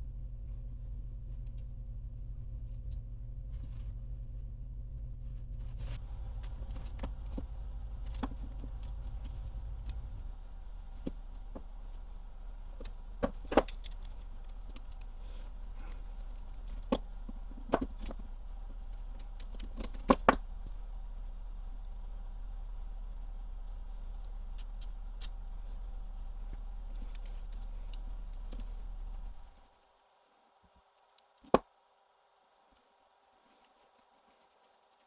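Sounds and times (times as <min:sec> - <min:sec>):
low hum: 0:00.0 - 0:29.8
metal parts clinking on surface: 0:12.7 - 0:20.7.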